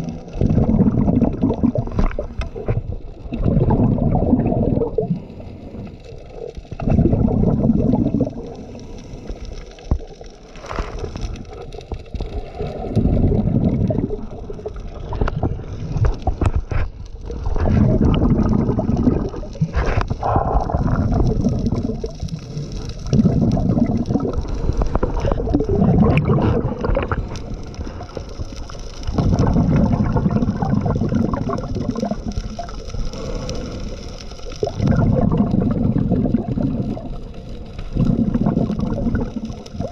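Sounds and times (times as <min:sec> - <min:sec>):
exhaust bubbles bubbling: 0:00.0 - 0:05.9, 0:06.7 - 0:08.8, 0:12.6 - 0:16.6, 0:17.2 - 0:39.9
diver breathing through regulator: 0:33.0 - 0:34.3.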